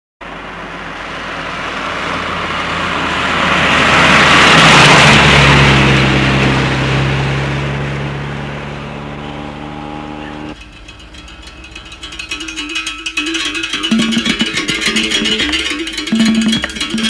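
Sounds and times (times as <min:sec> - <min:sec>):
vehicle passing by: 0:00.2 - 0:10.6
low engine hum: 0:00.2 - 0:17.0.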